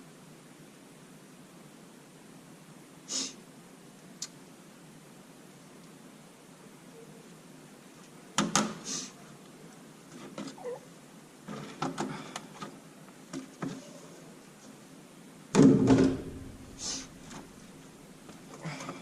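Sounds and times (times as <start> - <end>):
heavy thump: 15.6 - 16.8.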